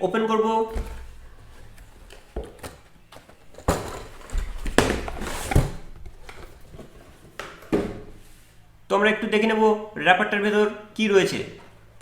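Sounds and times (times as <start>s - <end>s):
plastic wrapping rustling: 0.7s - 7.4s.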